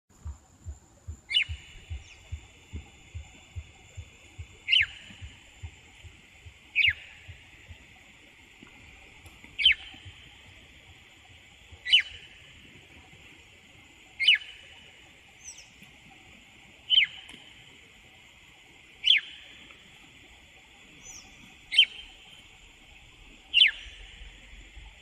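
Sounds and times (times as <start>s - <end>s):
faint low thumps: 0.1s - 11.9s
high-pitched whine: 0.2s - 16.2s
mockingbird harsh calls: 1.2s - 8.0s, 9.5s - 10.9s, 11.8s - 12.6s, 14.2s - 14.7s, 16.9s - 17.3s, 19.0s - 19.4s, 23.5s - 24.2s.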